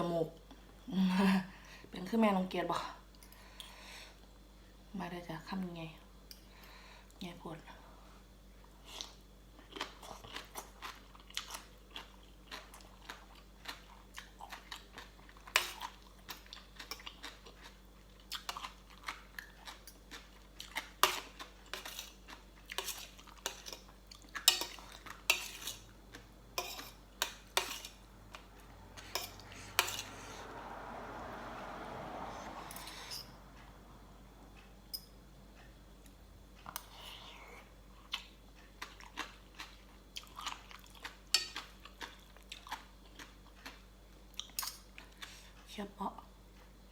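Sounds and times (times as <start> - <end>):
crunchy chewing: 8.9 - 30.2, 36.7 - 45.6.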